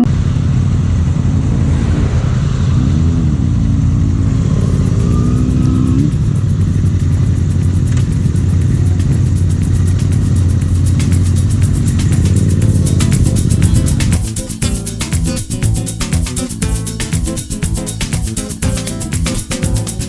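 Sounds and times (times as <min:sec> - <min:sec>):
motorcycle engine running: 0:04.6 - 0:20.0.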